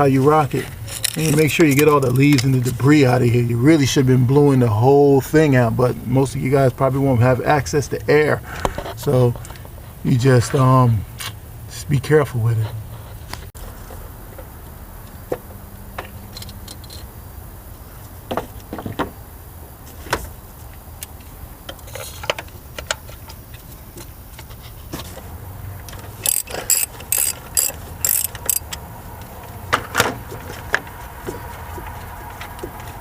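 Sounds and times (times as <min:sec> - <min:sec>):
socket ratchet clicking: 0:26.2 - 0:28.8.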